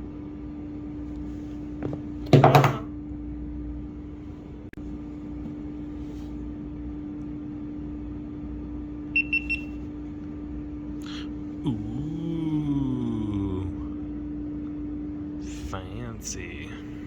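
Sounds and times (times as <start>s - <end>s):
steady low hum: 0.0s - 17.0s
handling noise: 1.1s - 2.9s.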